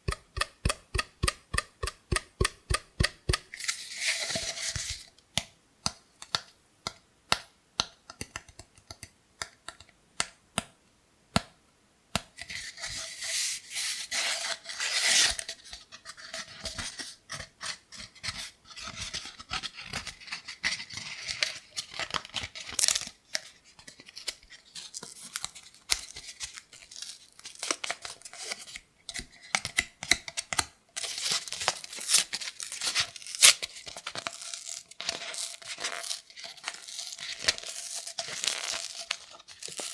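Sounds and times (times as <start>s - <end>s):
cardboard tube being tapped: 0.0s - 3.6s.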